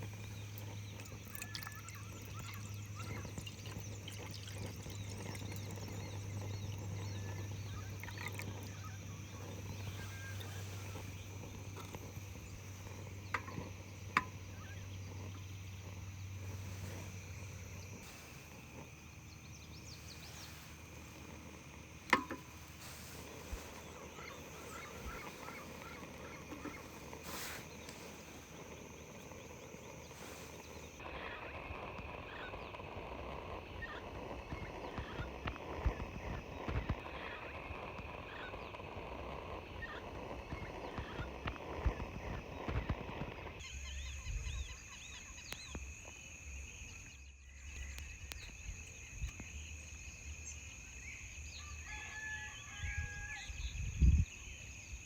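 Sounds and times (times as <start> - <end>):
steady low hum: 0.0 - 45.6
farm fowl calling: 6.8 - 12.0, 22.1 - 29.2.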